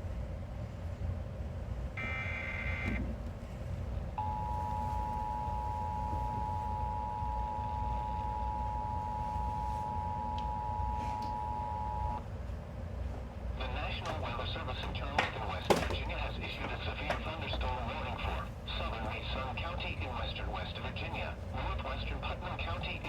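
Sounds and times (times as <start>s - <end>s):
low radio hum: 4.2s - 12.2s, 13.5s - 23.0s.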